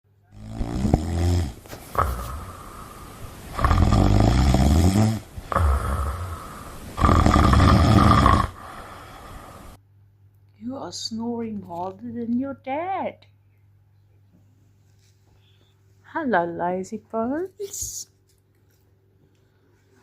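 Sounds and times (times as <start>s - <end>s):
dogs snoring: 0.3s - 9.8s.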